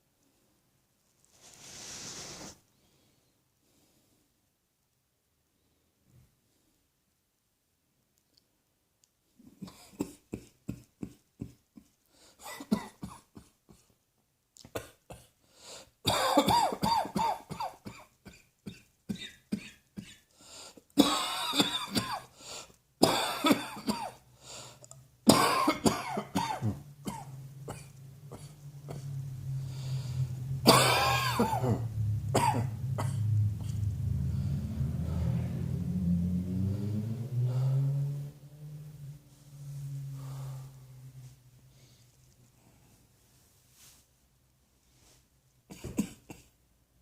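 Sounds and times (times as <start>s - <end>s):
person coughing: 12.4s - 13.9s, 16.1s - 20.2s, 23.0s - 24.2s, 25.3s - 29.1s, 30.6s - 33.3s, 45.7s - 46.6s.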